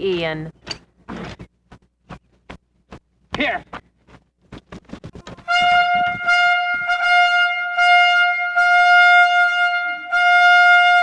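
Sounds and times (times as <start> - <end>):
trumpet blowing a high note: 5.4 - 11.0.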